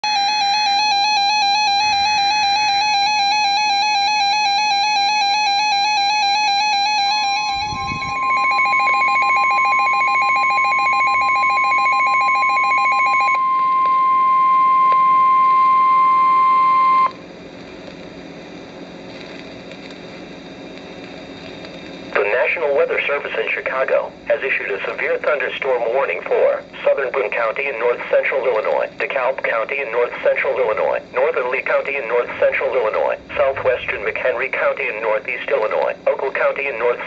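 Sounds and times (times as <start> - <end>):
warbling electronic alarm: 0.0 - 17.2, 32.4 - 35.0
steady high warning tone: 0.0 - 18.4, 27.8 - 37.0
pulsing beeps: 0.1 - 13.4
data burst screech: 33.0 - 34.9.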